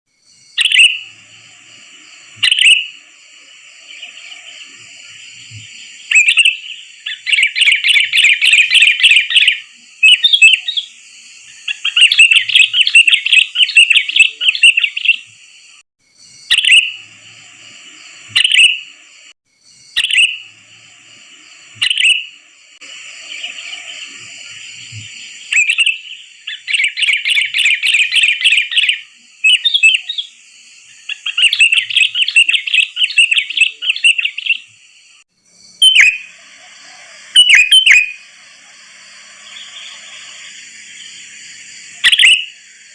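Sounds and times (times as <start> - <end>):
bird calling loudly: 0.6 - 1.2, 2.3 - 3.0, 3.8 - 15.3, 16.5 - 17.1, 18.3 - 19.0, 20.0 - 20.6, 21.8 - 22.4, 23.2 - 30.4, 31.0 - 34.7, 35.8 - 38.3, 41.9 - 42.6.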